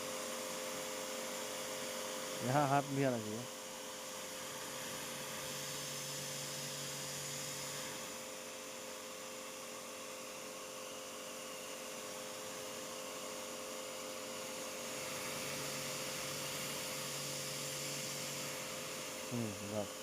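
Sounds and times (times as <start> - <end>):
electric hum: 14.8 - 20.0.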